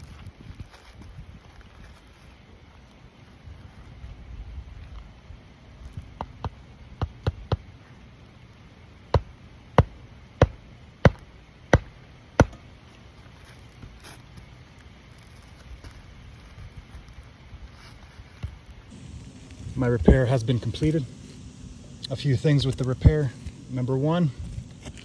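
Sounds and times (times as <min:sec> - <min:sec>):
hammer striking nails: 0:11.8 - 0:12.6.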